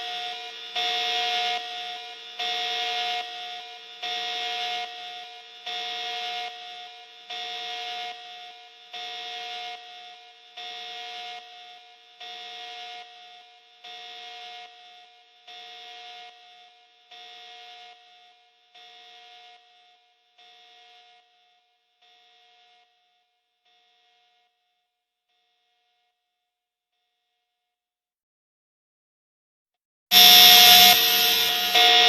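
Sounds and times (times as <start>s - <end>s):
harsh buzzing alarm pulses: 30.1s - 32.0s.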